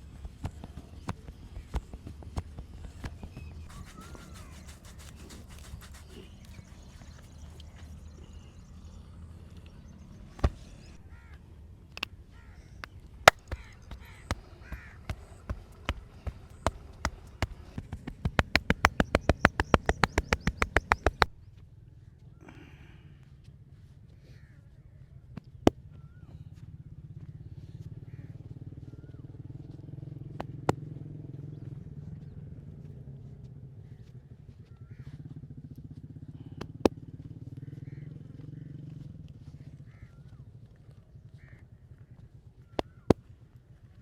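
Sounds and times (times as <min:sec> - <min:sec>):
hands slapping body: 0:12.8 - 0:21.4.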